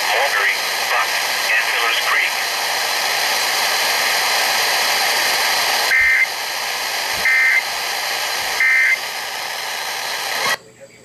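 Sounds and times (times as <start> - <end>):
radio static hiss: 0.0 - 11.0
warbling data bursts: 5.8 - 6.4, 7.2 - 7.7, 8.6 - 9.2.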